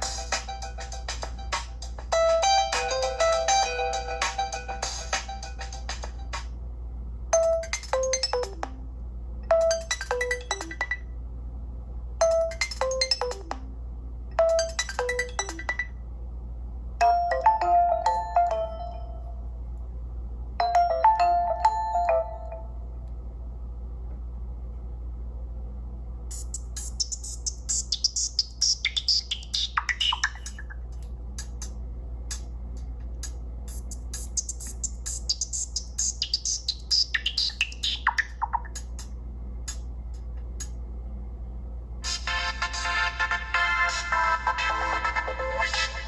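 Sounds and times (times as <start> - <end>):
phone ringtone melody: 14.4 - 15.8, 17.0 - 19.4, 20.6 - 22.8.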